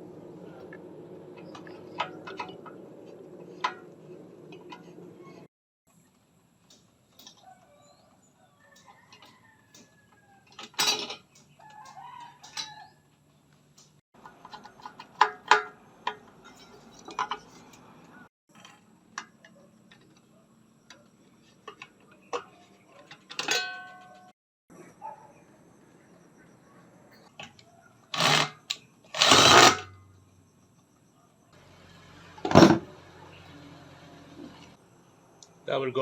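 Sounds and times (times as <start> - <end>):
rooster crowing: 7.3 - 10.6, 11.6 - 13.1.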